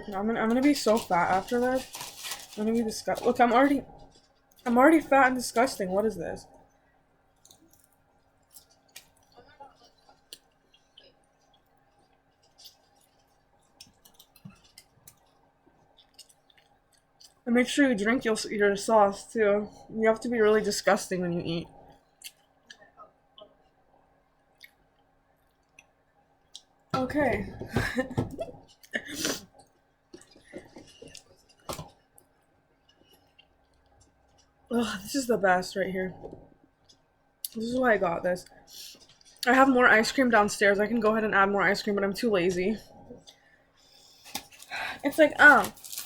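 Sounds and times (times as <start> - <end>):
food being handled: 0.4 - 4.6
soft wet chewing: 6.5 - 17.4, 21.8 - 26.9, 28.6 - 34.7, 36.2 - 37.6.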